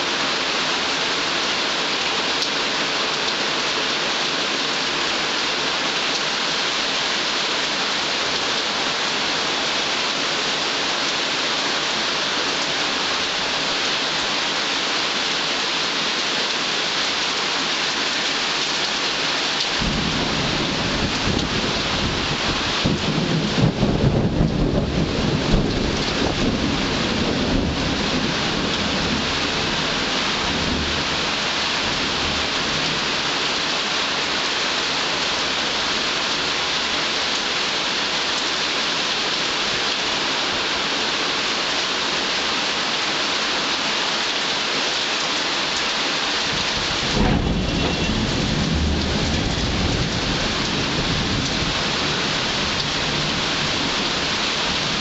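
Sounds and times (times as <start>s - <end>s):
heavy rain falling: 0.0s - 55.0s
thunder rumbling: 19.8s - 29.8s, 46.5s - 55.0s.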